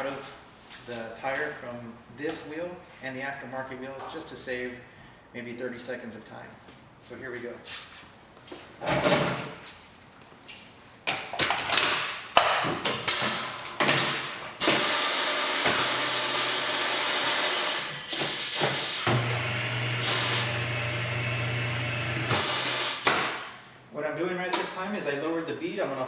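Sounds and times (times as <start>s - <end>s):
compressed air hissing: 14.6s - 19.1s
electric motor hum: 19.1s - 22.4s.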